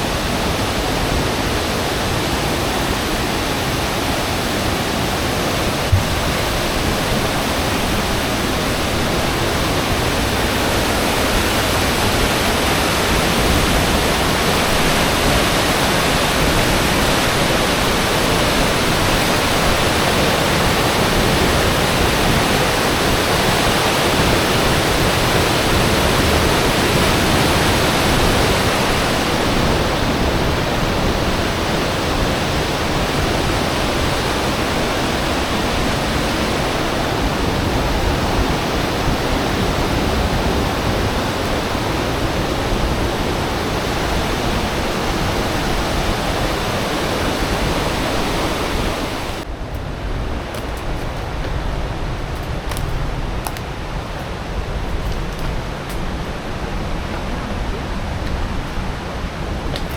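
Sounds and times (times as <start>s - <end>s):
waterfall rushing water: 0.0s - 59.9s
low thump: 5.9s - 6.5s.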